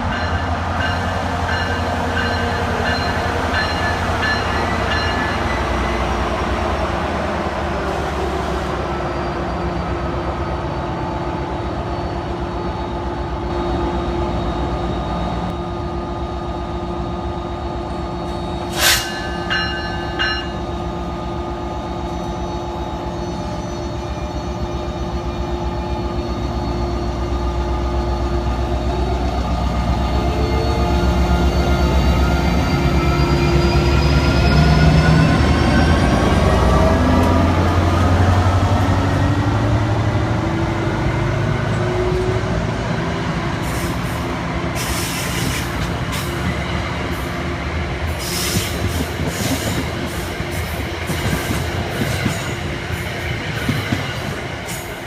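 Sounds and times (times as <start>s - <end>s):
sharp metallic clank: 18.6s - 20.7s.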